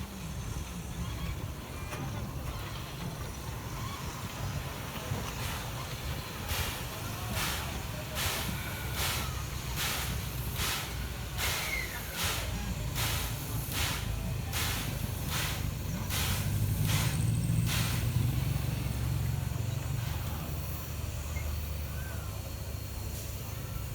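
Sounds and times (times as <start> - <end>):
steam locomotive chuffing: 0.0 - 23.9
low running rumble: 3.6 - 21.0.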